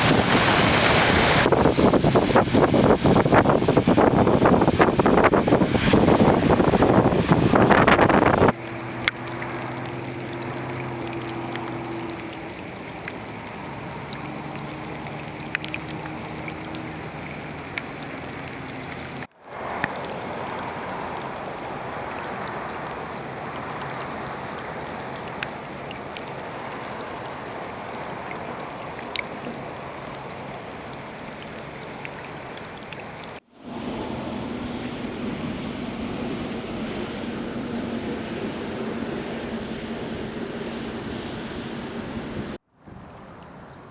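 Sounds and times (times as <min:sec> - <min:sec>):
vehicle engine running: 0:00.0 - 0:32.4
floodwater rushing: 0:00.0 - 0:43.9.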